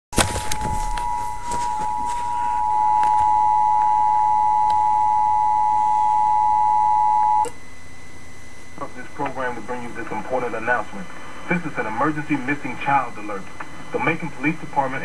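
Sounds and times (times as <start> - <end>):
two-tone alert signal: 0.2 - 7.5.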